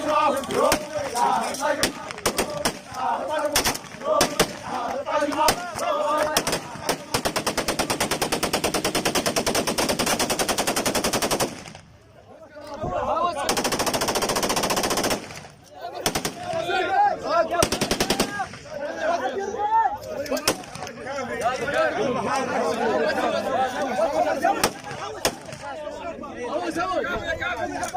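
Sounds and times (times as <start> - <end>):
men chanting: 0.0 - 8.2
gunshots: 0.1 - 11.9, 13.4 - 16.9, 17.5 - 18.8, 20.4 - 20.9, 24.5 - 25.8
automatic rifle fire: 6.3 - 11.8, 13.5 - 16.6.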